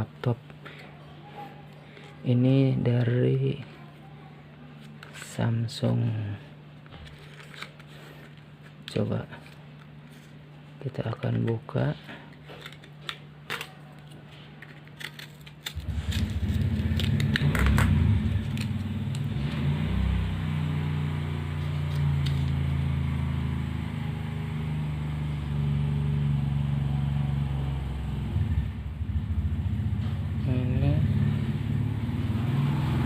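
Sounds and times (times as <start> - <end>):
plastic packaging clicks and crackles: 12.4 - 17.9
vehicle engine running: 15.8 - 33.0.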